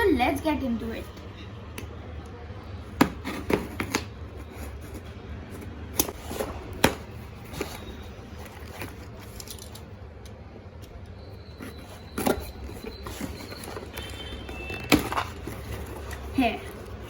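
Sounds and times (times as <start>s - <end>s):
packaging clicks: 6.0s - 17.0s
packaging crinkling: 11.7s - 17.0s.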